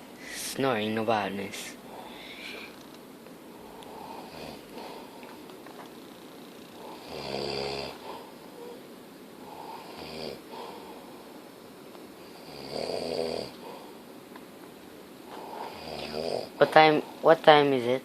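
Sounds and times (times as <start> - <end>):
man snoring: 3.6 - 5.1, 6.8 - 8.7, 9.4 - 11.0, 12.3 - 13.9, 15.3 - 16.8.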